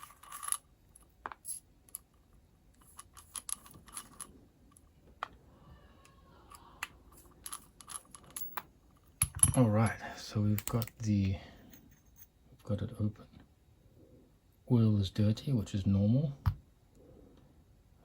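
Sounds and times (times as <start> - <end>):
small metal parts clicking: 0.0 - 5.3, 6.0 - 9.6.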